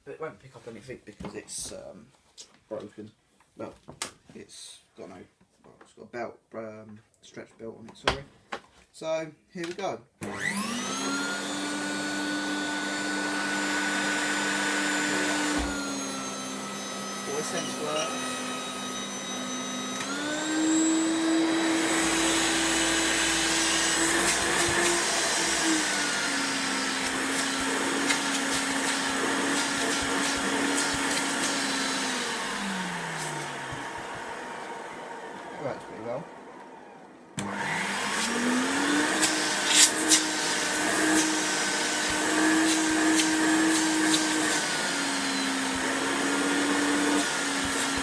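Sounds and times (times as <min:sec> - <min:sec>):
vacuum cleaner running: 0:10.2 - 0:48.0.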